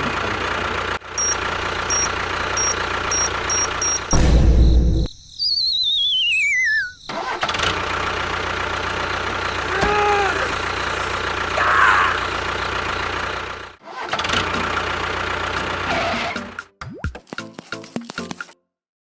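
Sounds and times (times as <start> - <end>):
engine starting and running: 0.0 - 5.1, 6.6 - 16.6
falling warbling whistle: 5.0 - 7.1.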